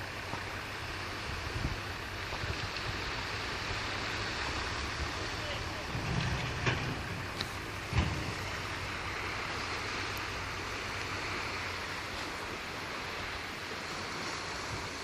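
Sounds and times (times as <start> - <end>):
diesel engine rumbling: 0.0 - 15.0
steady hiss: 0.0 - 15.0.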